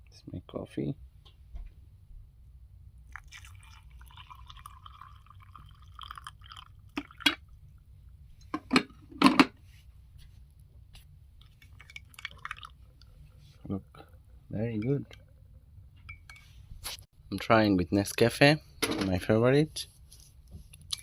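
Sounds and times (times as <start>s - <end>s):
coffee pouring into a cup: 3.1s - 7.5s, 11.4s - 13.1s.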